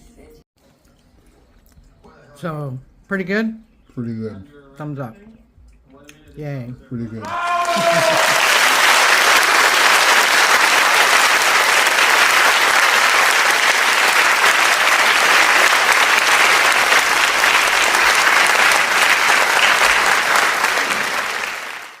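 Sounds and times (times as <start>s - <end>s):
dense clapping: 7.2s - 22.0s.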